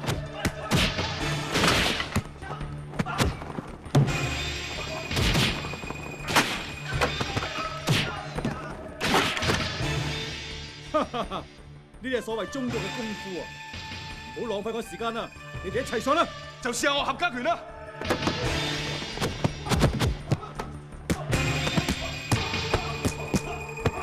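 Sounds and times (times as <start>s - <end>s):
dramatic background music: 0.0s - 24.0s
punches and kicks landing: 0.4s - 2.3s.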